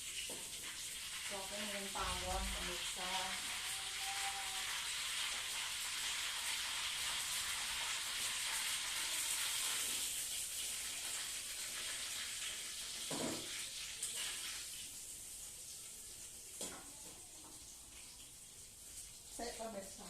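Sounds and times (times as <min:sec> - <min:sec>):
food sizzling in hot oil: 0:00.0 - 0:20.0.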